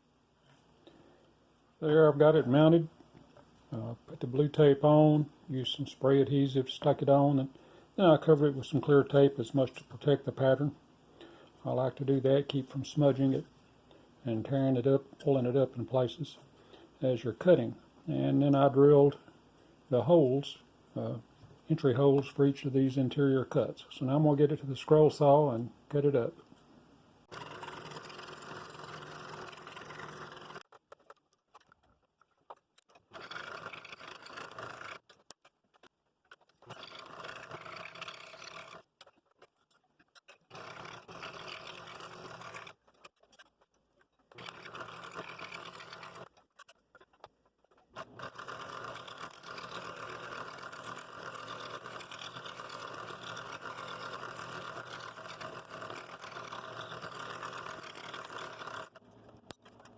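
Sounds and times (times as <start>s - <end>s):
scroll saw cutting wood: 27.2s - 31.2s, 32.8s - 35.4s, 36.4s - 39.5s, 40.2s - 43.6s, 44.3s - 46.8s, 47.9s - 59.9s.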